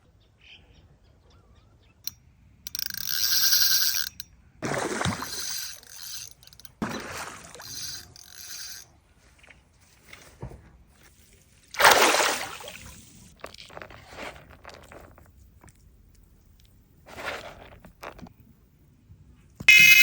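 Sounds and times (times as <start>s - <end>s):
fishing reel buzzing: 2.7s - 4.3s, 5.0s - 6.8s, 7.5s - 8.9s, 19.7s - 20.0s
heavy splashes in water: 6.8s - 7.6s, 11.8s - 13.0s.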